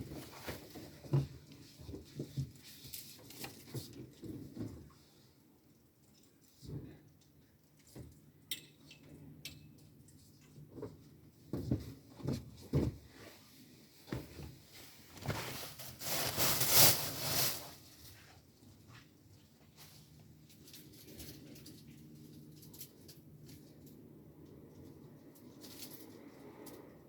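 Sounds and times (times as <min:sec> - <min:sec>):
laundry rustling: 0:11.5 - 0:22.4.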